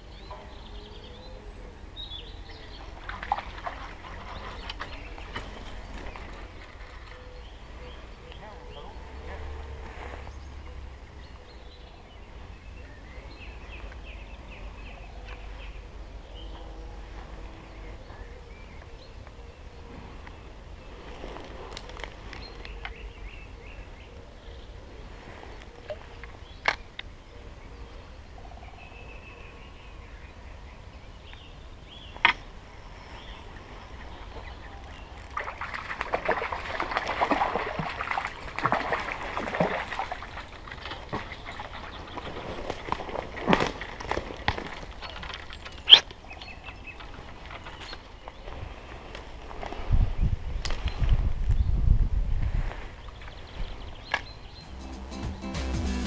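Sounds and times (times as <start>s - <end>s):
stream running: 0.0s - 17.9s, 32.5s - 49.7s.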